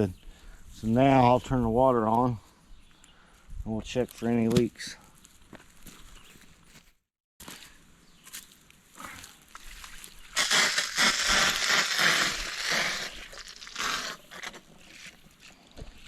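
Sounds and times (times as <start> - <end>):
water hissing through hose: 10.3 - 14.6.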